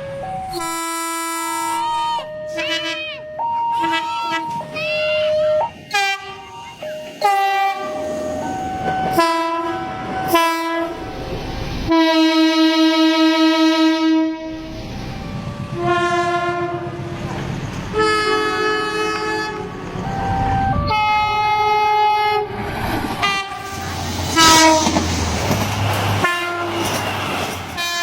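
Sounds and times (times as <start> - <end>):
train rolling: 0.0 - 28.0
locomotive horn blasts: 0.5 - 8.1, 9.0 - 10.9, 11.9 - 14.6, 15.6 - 17.1, 17.9 - 22.5, 23.2 - 25.0, 26.2 - 27.1, 27.8 - 28.0.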